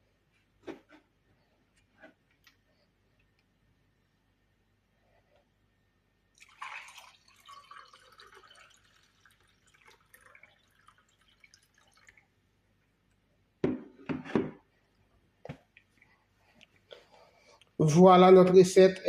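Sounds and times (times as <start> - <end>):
liquid pouring into a cup: 6.3 - 12.3.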